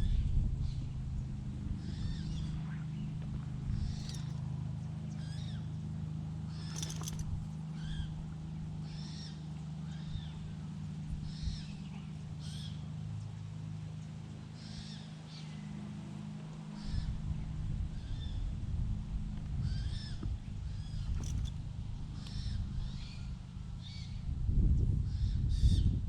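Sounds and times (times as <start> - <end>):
low hum: 1.2 - 4.4, 18.2 - 24.4.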